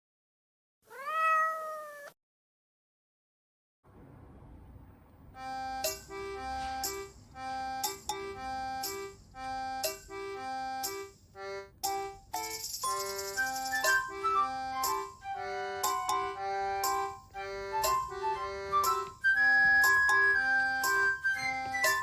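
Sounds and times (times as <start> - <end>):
faint low hum: 3.9 - 7.6
bouncy background music: 5.5 - 22.0.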